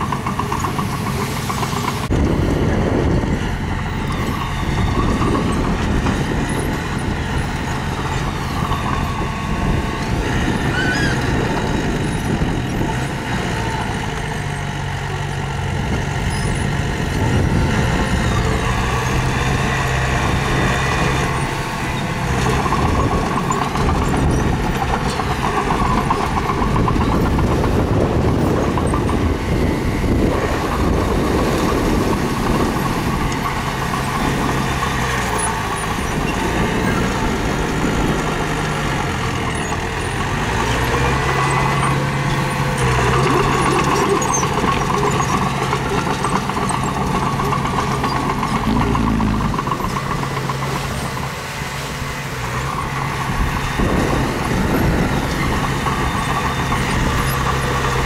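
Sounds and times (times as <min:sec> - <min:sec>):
bulldozer diesel engine under load: 0:00.0 - 0:58.0
dense rattle: 0:20.1 - 0:58.0.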